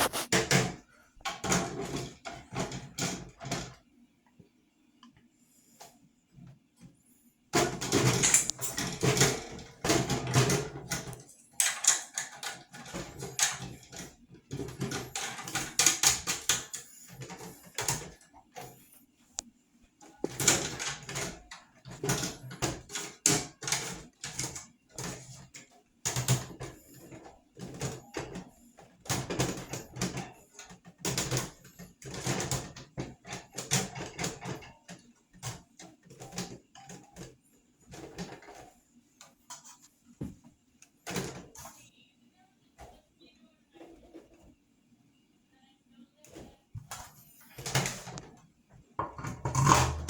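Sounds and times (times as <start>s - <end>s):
rubbing and scrubbing: 0.0s - 0.5s
fan parts clattering: 7.6s - 18.9s, 46.8s - 50.0s.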